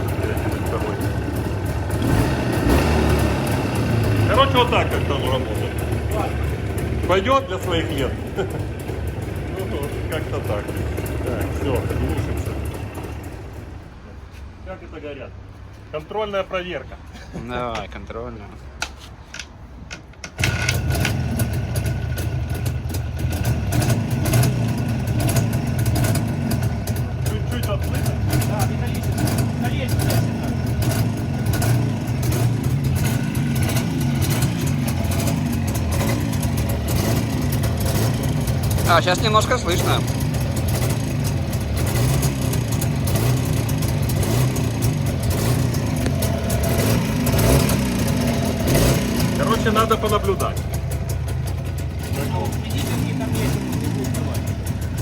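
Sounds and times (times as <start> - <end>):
motorcycle engine starting and idling: 0.0 - 13.9, 19.3 - 55.0
faint metallic engine noise: 0.0 - 18.6, 19.3 - 55.0.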